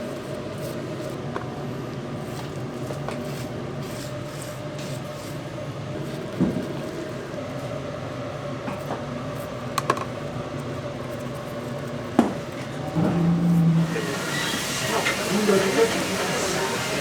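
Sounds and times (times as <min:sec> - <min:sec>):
steady hum: 0:12.8 - 0:17.0
loud low drone: 0:13.0 - 0:14.3.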